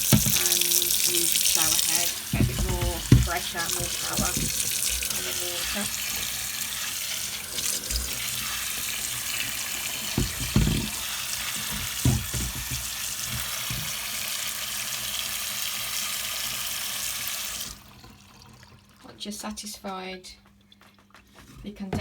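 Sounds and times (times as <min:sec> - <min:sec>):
dull knocks: 0:00.0 - 0:00.6, 0:01.6 - 0:05.2, 0:10.1 - 0:14.0
water spraying onto dryer condenser: 0:00.0 - 0:14.5.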